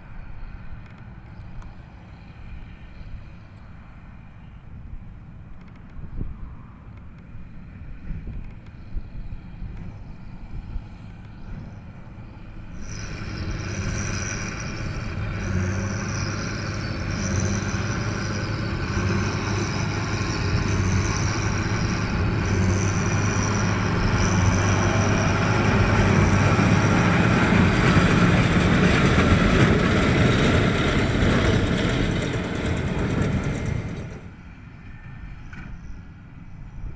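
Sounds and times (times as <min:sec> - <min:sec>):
tractor engine running: 0:12.0 - 0:34.4.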